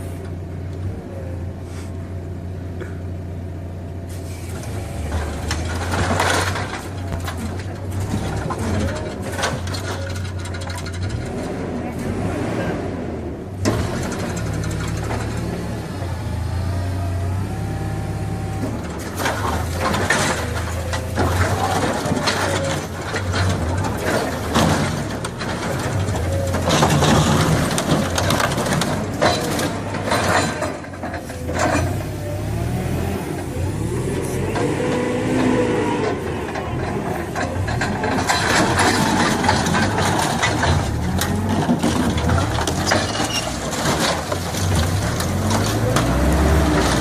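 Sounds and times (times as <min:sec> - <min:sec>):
heavy machinery engine running: 0:00.0 - 0:47.0
metallic clanks and knocks: 0:18.6 - 0:32.1, 0:36.1 - 0:47.0.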